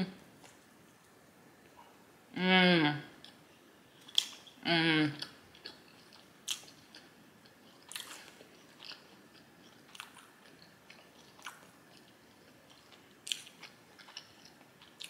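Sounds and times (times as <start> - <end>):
person chewing food: 4.0 - 4.6, 5.2 - 15.0.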